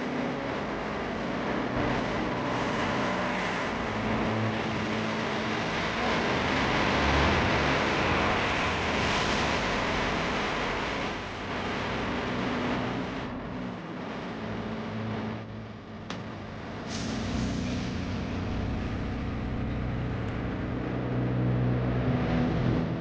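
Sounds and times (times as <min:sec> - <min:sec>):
tyres hissing on wet road: 0:16.9 - 0:19.1.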